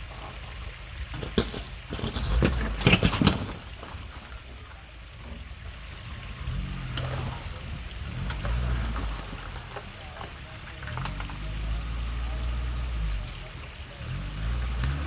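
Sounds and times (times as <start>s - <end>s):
low engine rumble: 0.0s - 15.0s
sharp knocks and clatters: 1.0s - 4.5s.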